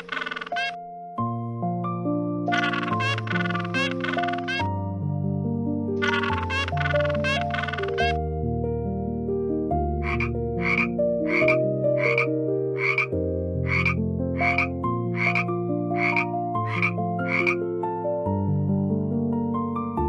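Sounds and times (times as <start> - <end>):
animal calling: 0.0 - 0.8, 2.5 - 4.7, 6.0 - 8.2, 10.0 - 17.6
soft background music: 0.0 - 20.0.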